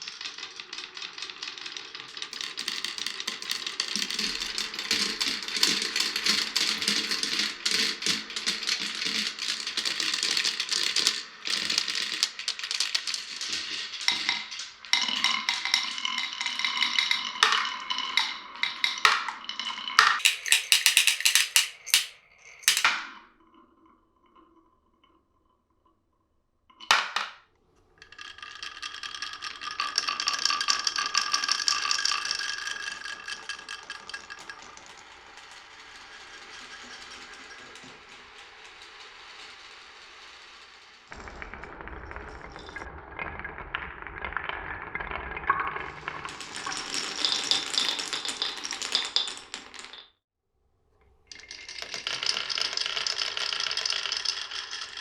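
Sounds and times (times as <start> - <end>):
marbles clattering down wooden run: 0.0 - 23.2, 26.8 - 27.4, 28.0 - 42.9, 43.8 - 50.1, 51.3 - 55.0.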